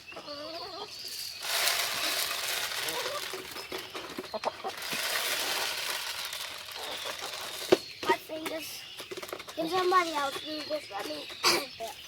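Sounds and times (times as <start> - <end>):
hens clucking: 0.0 - 12.0
chicken feed pouring from bucket: 1.4 - 7.8.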